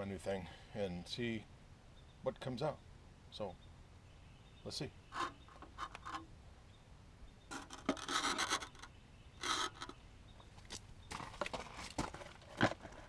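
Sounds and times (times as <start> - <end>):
brush scraping inside duct: 7.5 - 8.8.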